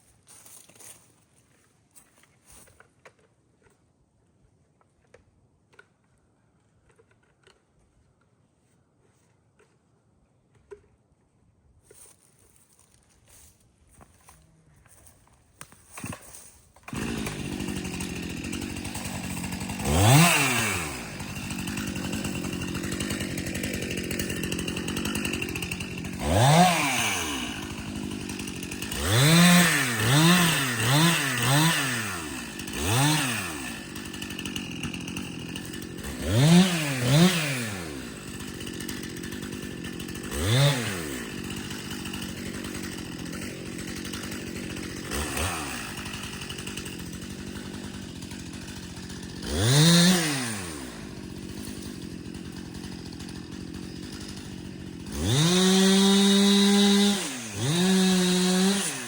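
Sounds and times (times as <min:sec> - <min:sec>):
chainsaw revving: 0:15.9 - 0:59.0.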